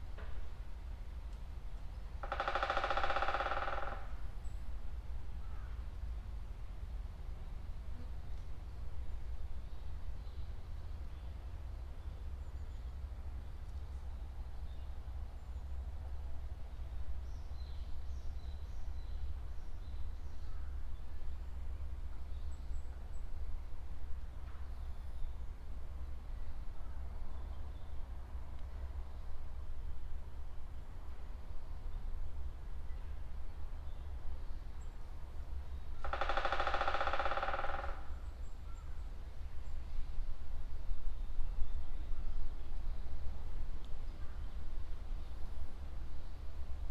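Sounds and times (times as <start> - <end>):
woodpecker drumming on a tree: 2.2 - 4.4, 35.4 - 38.5.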